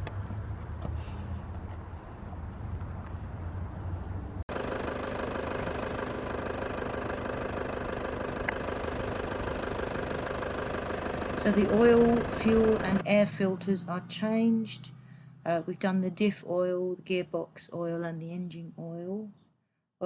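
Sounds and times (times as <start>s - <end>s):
truck engine idling: 4.5s - 13.1s.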